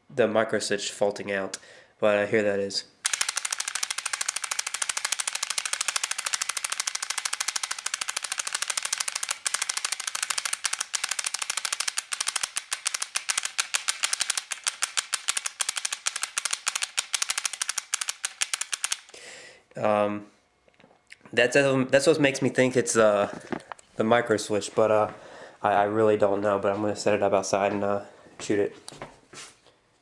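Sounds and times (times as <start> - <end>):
solenoid clicking rapidly: 3.0 - 19.2.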